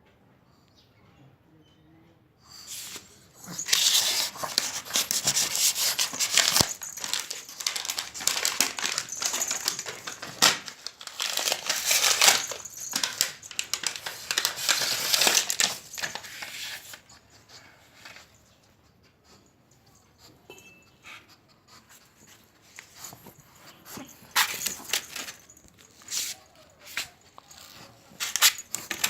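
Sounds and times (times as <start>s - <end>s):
crunching and crinkling: 2.7s - 17.0s, 22.2s - 29.0s.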